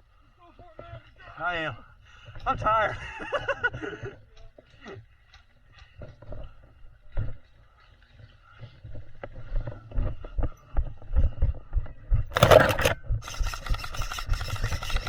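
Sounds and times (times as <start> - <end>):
loud scrape: 12.4 - 15.0.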